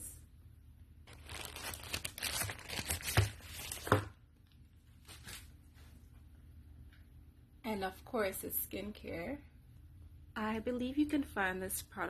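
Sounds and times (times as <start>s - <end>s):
sharp paper rips: 1.1s - 3.9s
package wrapping tearing and crinkling: 1.1s - 4.1s.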